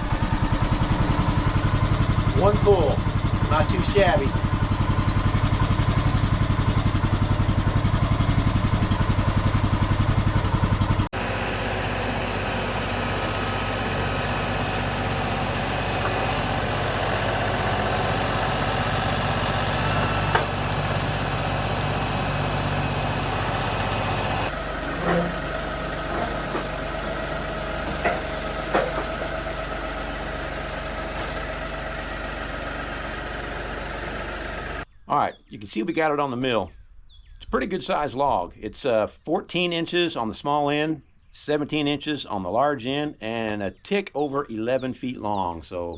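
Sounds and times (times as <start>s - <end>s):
engine idling with fast pulsing: 0.0s - 34.9s
sharp knocks and clunks: 13.1s - 18.1s, 19.8s - 21.2s, 23.7s - 31.6s.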